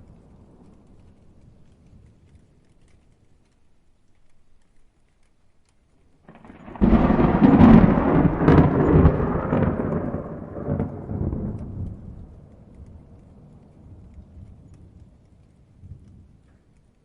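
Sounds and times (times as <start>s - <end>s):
thunder rumbling and cracking: 6.2s - 16.5s.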